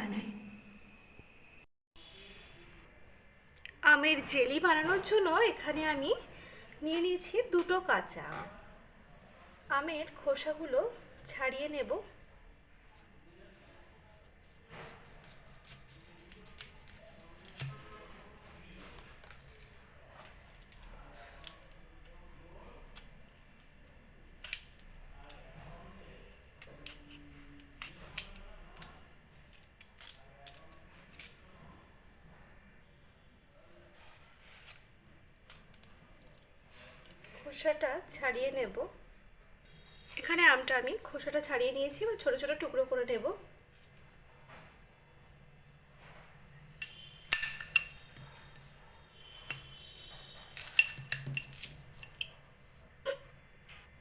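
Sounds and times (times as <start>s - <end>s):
blade scraping mango skin: 14.6s - 18.0s.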